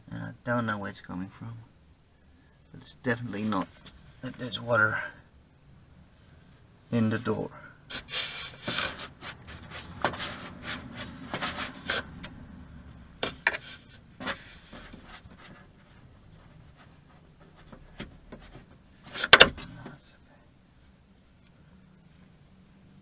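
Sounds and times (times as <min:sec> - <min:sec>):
camera handling rubbing and scraping: 0:07.9 - 0:12.4.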